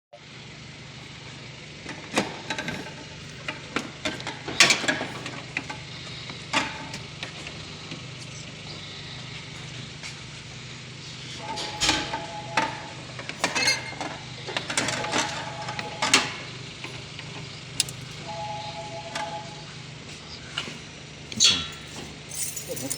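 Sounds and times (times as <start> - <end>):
metal clinks and knocks: 21.4 - 22.9.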